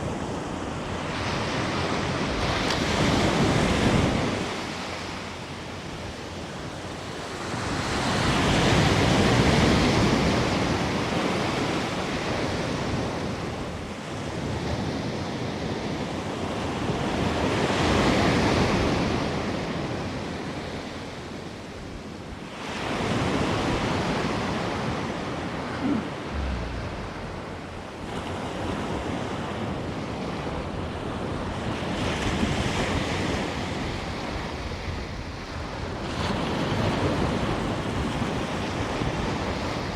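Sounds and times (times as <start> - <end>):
surf breaking on a beach: 22.5 - 39.9
wind buffeting microphone: 25.7 - 28.8.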